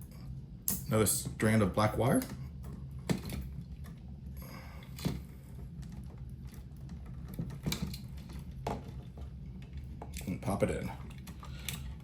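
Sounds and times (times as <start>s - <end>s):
clicks and taps handling wire: 4.8s - 12.0s.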